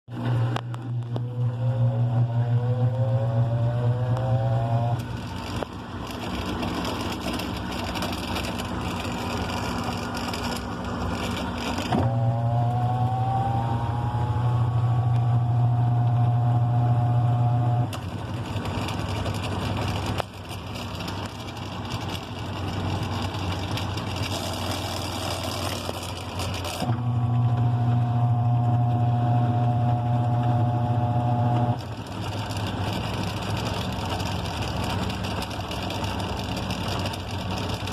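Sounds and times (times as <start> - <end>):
washing machine motor whine: 0.1 - 20.1, 21.6 - 37.9.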